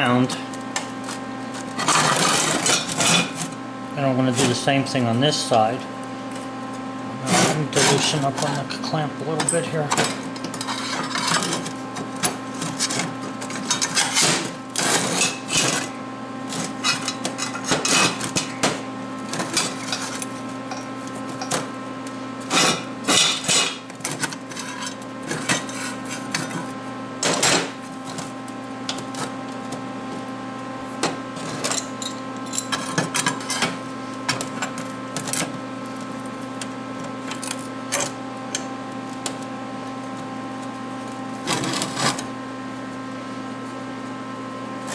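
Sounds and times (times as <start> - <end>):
steady electrical hum: 0.0 - 44.9
metal clanks and scrapes: 1.7 - 3.5, 7.2 - 11.7, 12.6 - 18.6, 19.4 - 21.5, 22.5 - 27.8, 41.4 - 42.2.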